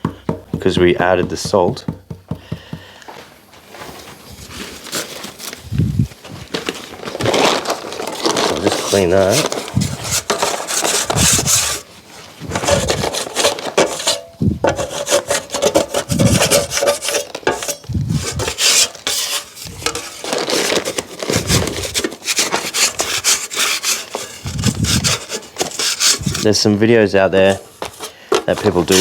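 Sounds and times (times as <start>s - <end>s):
drywall knife scraping: 8.2s - 11.9s, 12.5s - 26.7s, 27.4s - 29.0s.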